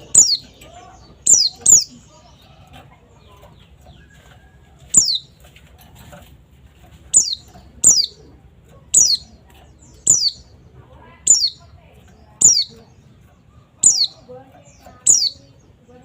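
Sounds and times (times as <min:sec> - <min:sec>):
high bird calls sweeping downward: 0:00.0 - 0:02.0, 0:04.9 - 0:05.3, 0:07.1 - 0:08.2, 0:08.9 - 0:10.5, 0:11.3 - 0:11.6, 0:12.4 - 0:12.8, 0:13.8 - 0:14.2, 0:14.8 - 0:15.5.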